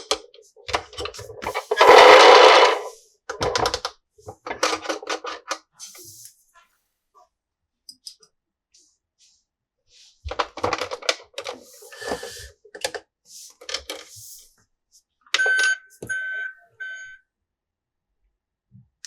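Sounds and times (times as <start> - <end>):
plastic toy parts clicking: 1.4 - 2.9
electronic toy beeping: 15.4 - 17.2.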